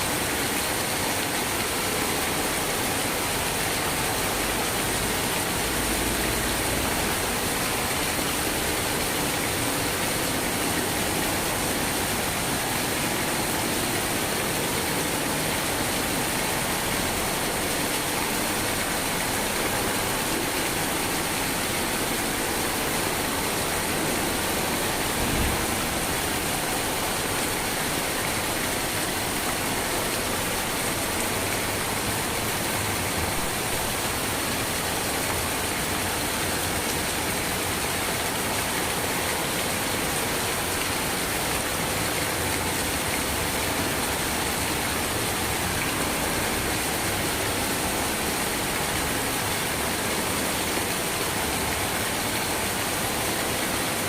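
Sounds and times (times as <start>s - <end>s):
steady rain falling: 0.0s - 54.0s
low thump: 25.2s - 26.0s.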